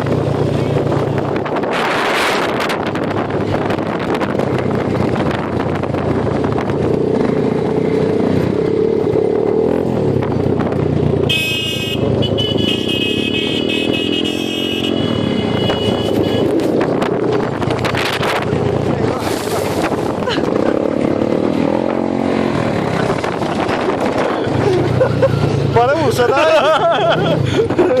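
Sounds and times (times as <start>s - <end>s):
vehicle horn blasts: 11.3s - 16.6s.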